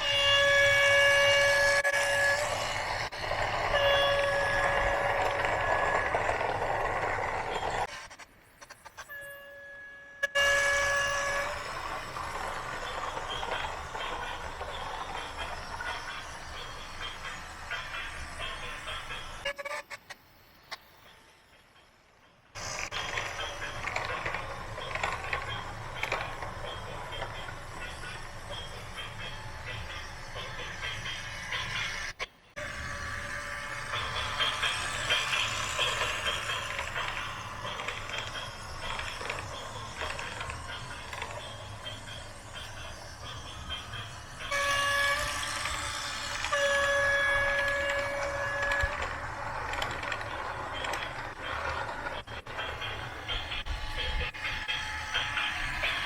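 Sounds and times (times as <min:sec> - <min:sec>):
small motors whirring: 0:22.6 - 0:56.0.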